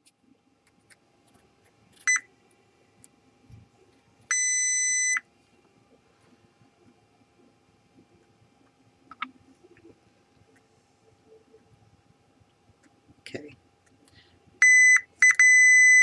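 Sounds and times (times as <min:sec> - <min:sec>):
multimeter beeping: 0:02.1 - 0:02.3, 0:04.3 - 0:05.2, 0:14.6 - 0:16.0.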